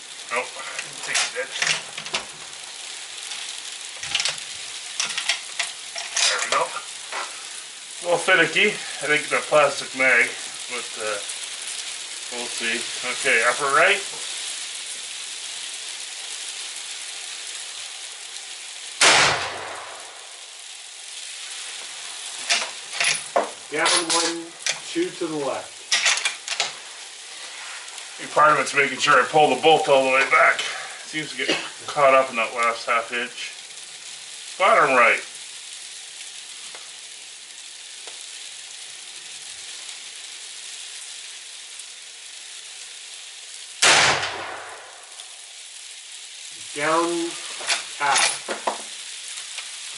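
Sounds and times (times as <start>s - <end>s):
background hiss: 0.0s - 49.9s
rifle shot: 19.0s - 20.2s, 43.8s - 45.0s.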